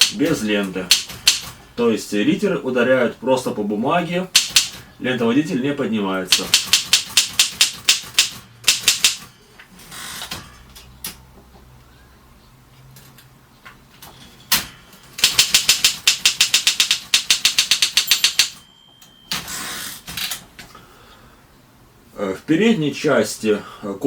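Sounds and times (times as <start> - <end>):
typewriter carriage rattle: 0.0 - 1.6, 4.3 - 4.8, 6.3 - 9.3, 14.5 - 18.6
typewriter key strikes: 0.0 - 1.6, 4.3 - 4.8, 6.3 - 9.3, 15.2 - 18.6
typewriter bell ringing: 15.2 - 19.5.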